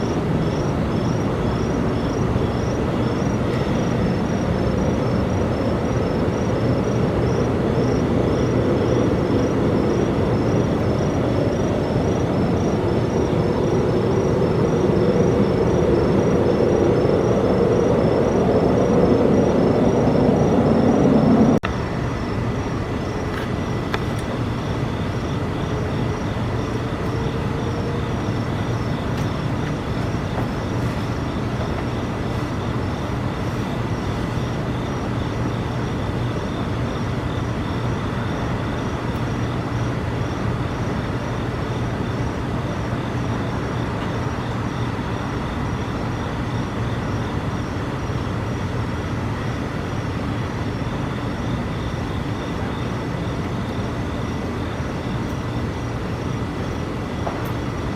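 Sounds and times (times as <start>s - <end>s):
insects chirping: 0.0s - 57.9s
loud droning rumble: 3.1s - 32.9s.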